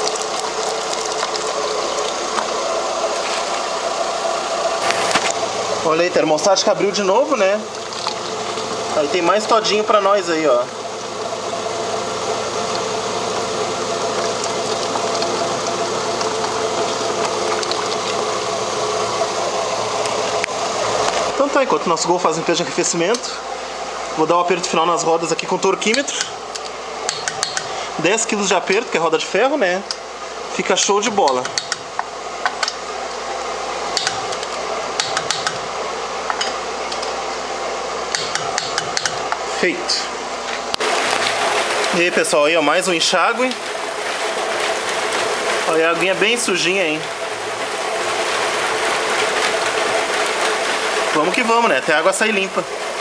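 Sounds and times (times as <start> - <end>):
running water hiss: 0.0 - 11.2
torque wrench clicking: 26.2 - 27.7, 34.0 - 34.2, 35.0 - 35.6, 38.1 - 39.2.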